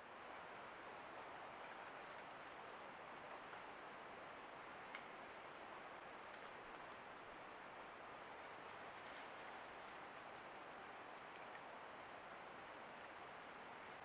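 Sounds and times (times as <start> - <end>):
faint click: 4.9 - 5.1, 11.3 - 11.7.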